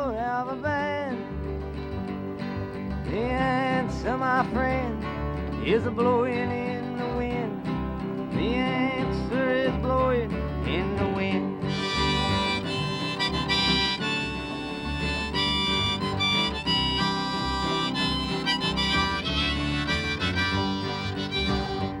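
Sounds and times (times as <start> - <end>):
strummed acoustic guitar: 0.0 - 22.0
harmonica: 11.6 - 22.0.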